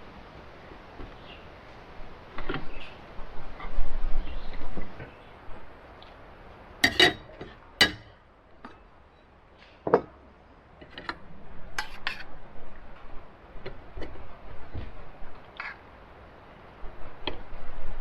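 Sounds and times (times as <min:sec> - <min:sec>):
utensils clinking against dishes: 0:06.8 - 0:08.1.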